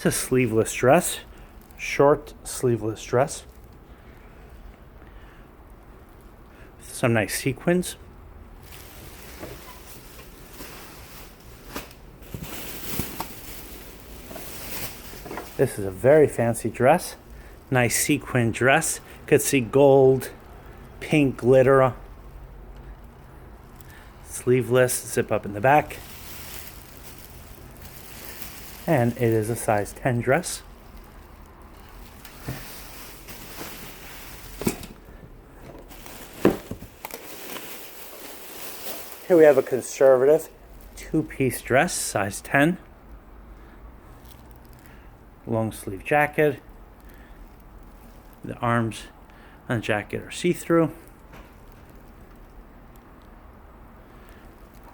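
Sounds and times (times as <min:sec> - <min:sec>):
dress fabric rustling: 0:08.6 - 0:18.0, 0:23.6 - 0:35.2, 0:35.8 - 0:41.0.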